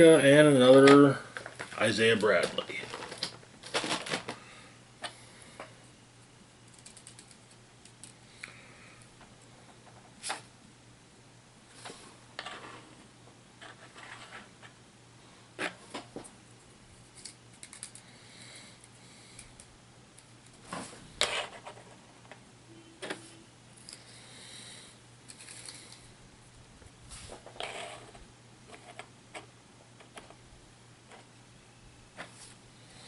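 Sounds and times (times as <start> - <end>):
packaging rustling: 1.4 - 4.4
plastic pieces clicking and tapping: 17.2 - 18.0.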